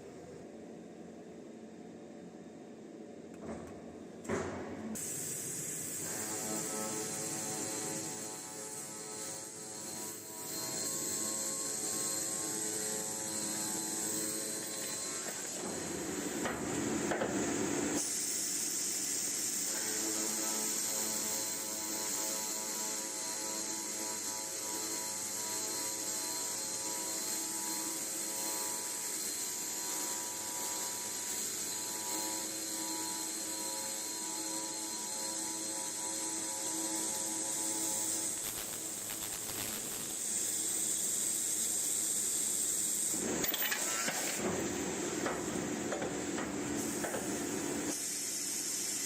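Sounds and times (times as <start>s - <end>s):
metal circular saw running: 6.0s - 16.3s, 19.6s - 48.0s.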